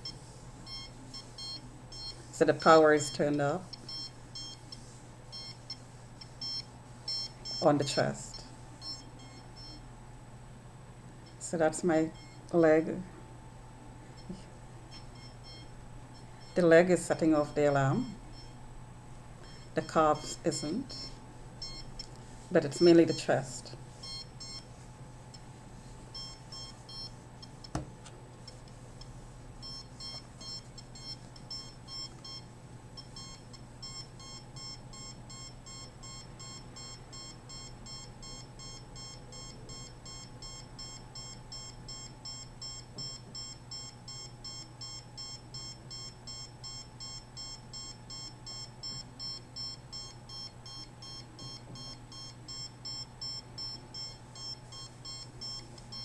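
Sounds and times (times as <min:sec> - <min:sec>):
meter alarm beeping: 0:00.0 - 0:09.9, 0:12.0 - 0:12.5, 0:14.2 - 0:18.6, 0:19.4 - 0:24.7, 0:26.1 - 0:27.8, 0:28.5 - 0:56.0.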